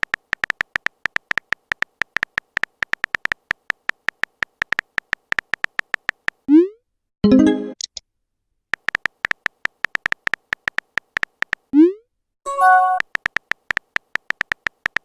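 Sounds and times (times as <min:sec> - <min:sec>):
phone keyboard typing ticks: 0:00.0 - 0:06.5, 0:08.7 - 0:11.7, 0:12.7 - 0:15.0.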